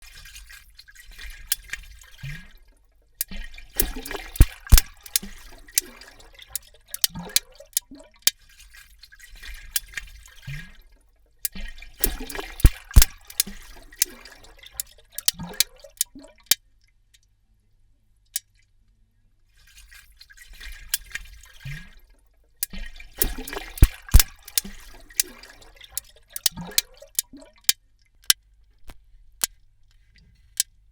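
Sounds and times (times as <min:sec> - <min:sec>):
shark clicks underwater: 0:03.2 - 0:06.0, 0:06.6 - 0:07.9, 0:12.0 - 0:16.6, 0:22.6 - 0:30.0
bubbling gurgling water: 0:03.3 - 0:08.1, 0:11.6 - 0:14.7, 0:22.8 - 0:27.7.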